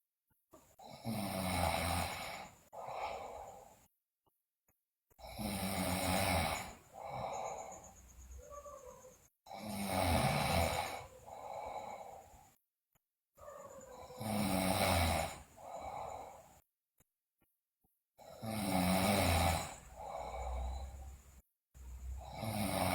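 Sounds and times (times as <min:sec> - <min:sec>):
girl snoring loudly: 0:00.8 - 0:03.8, 0:05.2 - 0:08.9, 0:09.5 - 0:12.3, 0:13.4 - 0:16.6, 0:18.2 - 0:21.2, 0:22.0 - 0:22.9.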